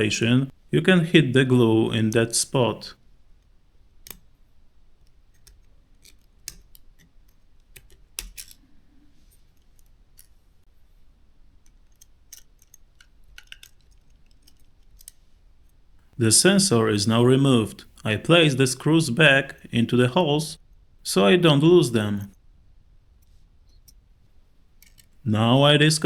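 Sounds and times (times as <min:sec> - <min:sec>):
small clicks and taps of tools: 0:05.0 - 0:08.6, 0:11.6 - 0:15.2, 0:24.8 - 0:25.2.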